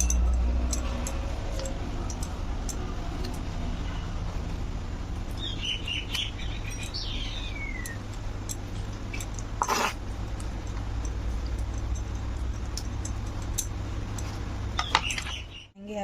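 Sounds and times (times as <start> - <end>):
steady low hum: 0.0 - 16.0
bird chirping: 5.3 - 8.1, 14.7 - 15.8.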